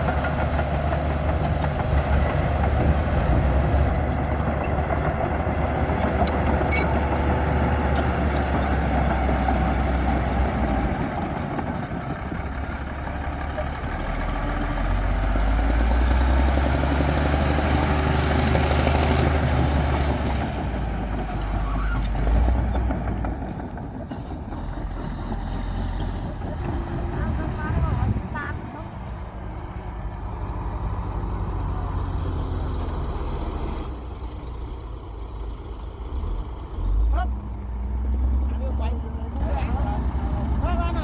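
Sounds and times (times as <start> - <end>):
bulldozer diesel engine working: 0.0 - 41.0.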